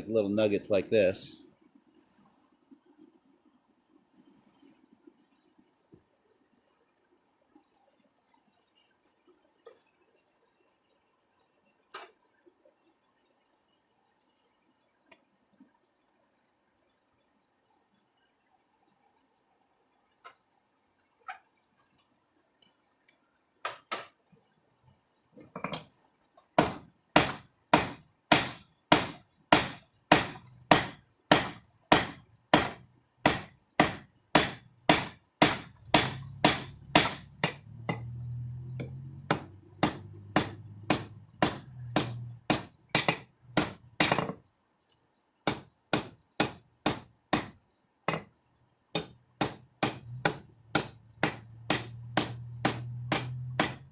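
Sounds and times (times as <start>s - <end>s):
hammer striking steel on anvil: 26.6s - 38.1s, 39.3s - 44.3s, 45.5s - 48.2s, 49.0s - 53.9s.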